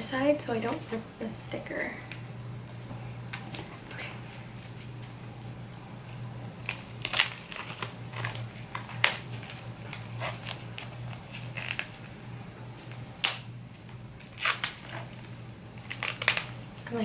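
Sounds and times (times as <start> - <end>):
plastic shrink-wrap crinkling: 4.3 - 17.0.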